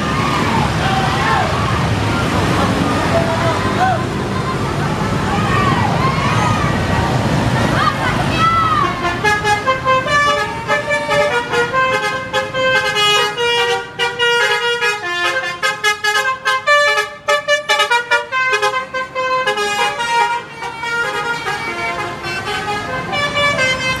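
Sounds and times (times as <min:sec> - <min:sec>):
musical bus horn melody: 0:08.8 - 0:24.0.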